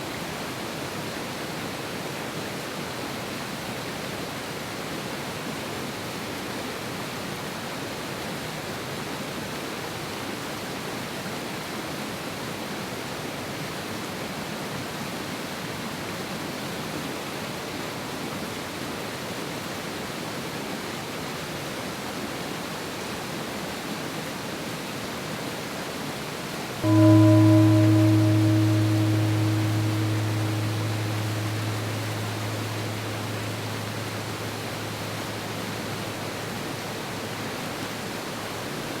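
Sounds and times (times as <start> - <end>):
bell-like tone ringing: 26.8 - 37.5.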